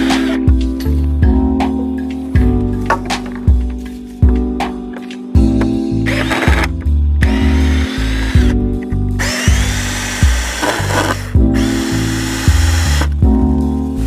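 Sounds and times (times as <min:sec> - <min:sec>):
cordless drill motor whining: 0:00.0 - 0:00.4, 0:06.1 - 0:08.6, 0:09.2 - 0:13.2
background music with bass line: 0:00.0 - 0:14.0.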